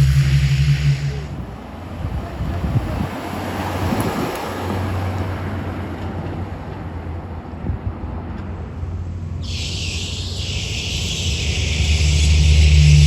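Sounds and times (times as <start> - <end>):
steady high hiss: 0.0 - 1.4, 9.4 - 13.0
vehicle engine humming: 0.0 - 1.6, 9.2 - 13.0
outdoor noise: 0.0 - 13.0.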